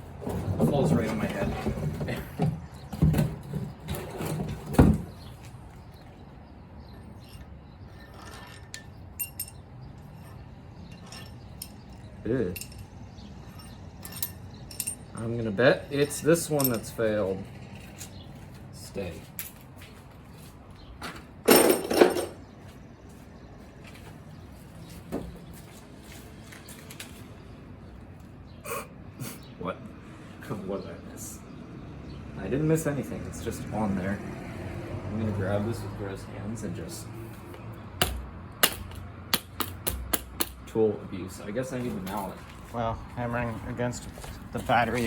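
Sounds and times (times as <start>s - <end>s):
metal knocks and clanks: 0.2s - 5.2s, 21.0s - 22.5s
metallic scrape and clatter: 3.1s - 5.0s, 7.2s - 11.8s.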